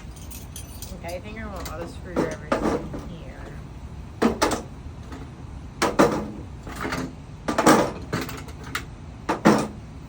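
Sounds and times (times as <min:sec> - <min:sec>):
screwdrivers clattering in toolbox: 0:00.0 - 0:01.7.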